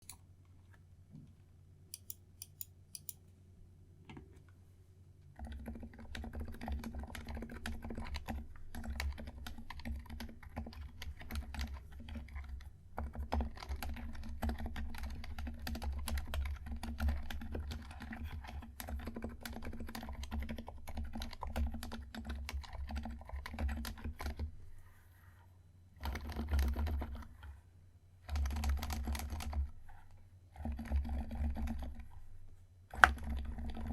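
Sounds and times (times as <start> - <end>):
mechanical keyboard typing: 5.4 - 24.4, 26.0 - 27.3, 28.2 - 29.7, 30.6 - 32.0, 33.0 - 33.9.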